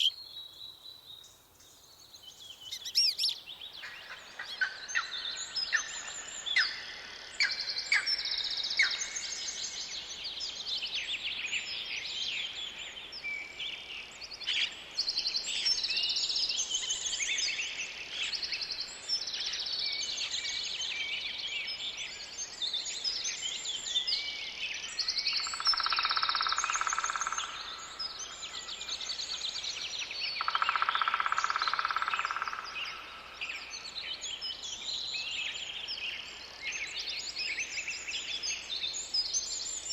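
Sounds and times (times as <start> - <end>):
low rapidly pulsing bird call: 0.0 - 0.2, 2.6 - 3.5
songbirds chirping and trilling: 0.0 - 39.9.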